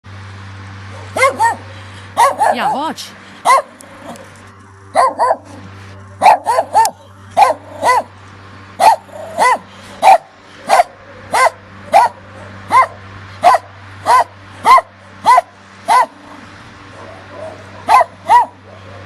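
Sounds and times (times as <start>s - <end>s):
dog barking: 0.9s - 2.8s, 3.4s - 3.8s, 5.0s - 5.6s, 6.2s - 8.1s, 8.8s - 16.2s, 17.0s - 19.0s.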